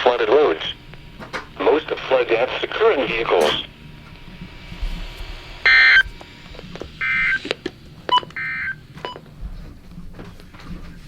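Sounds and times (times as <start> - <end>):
shrill digital data tones: 5.6 - 6.2, 7.0 - 8.8.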